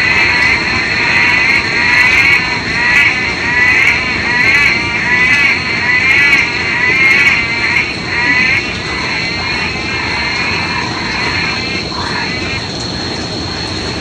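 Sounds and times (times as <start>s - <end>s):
chorus of frogs calling: 0.0s - 14.0s
steady high drone: 0.0s - 14.0s.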